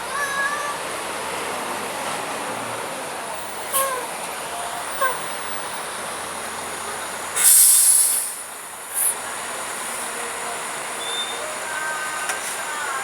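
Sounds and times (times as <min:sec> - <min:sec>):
roadside traffic: 0:00.0 - 0:13.0
air brakes hissing: 0:07.3 - 0:09.2.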